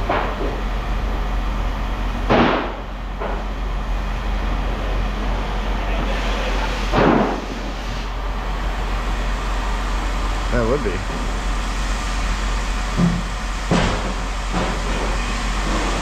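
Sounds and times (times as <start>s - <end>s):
machinery hum: 0.0s - 16.0s.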